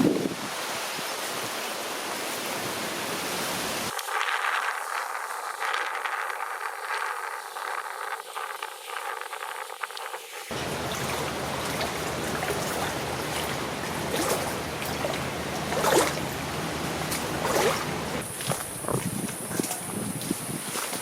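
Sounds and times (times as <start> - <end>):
wind and surf hiss: 0.0 - 21.0
water splashing and trickling: 10.5 - 21.0.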